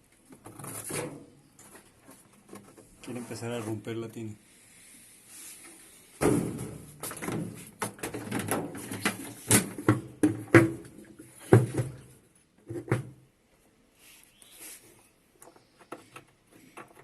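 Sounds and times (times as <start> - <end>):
washing machine parts clattering: 6.8 - 10.7.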